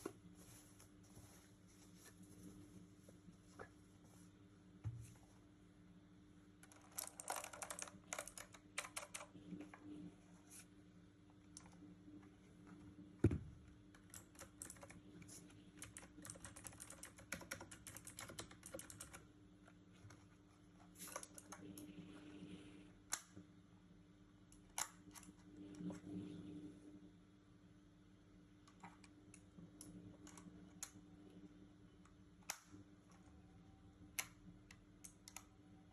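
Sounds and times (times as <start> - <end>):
keyboard typing clicks: 6.6 - 9.3.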